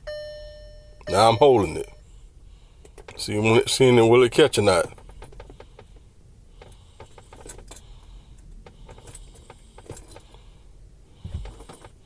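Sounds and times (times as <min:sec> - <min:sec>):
low hum: 0:00.0 - 0:02.8.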